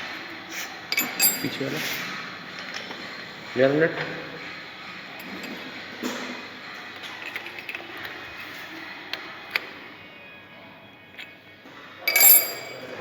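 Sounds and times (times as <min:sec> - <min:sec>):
lathe mechanical noise: 0:00.0 - 0:10.3.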